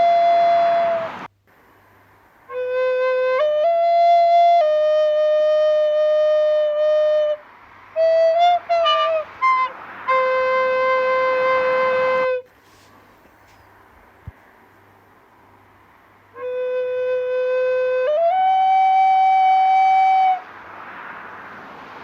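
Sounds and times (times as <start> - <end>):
flute playing slow melody: 0.0 - 1.3, 2.5 - 12.5, 16.3 - 20.4.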